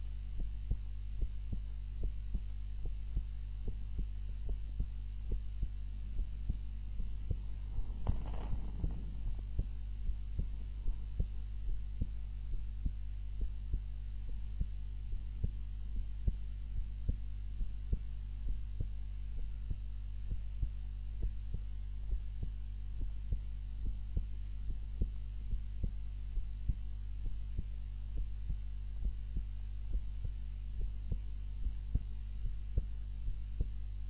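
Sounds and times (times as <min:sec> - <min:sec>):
constant low hum: 0:00.0 - 0:34.0
heartbeat: 0:00.0 - 0:34.0
brief rustling: 0:07.7 - 0:09.4.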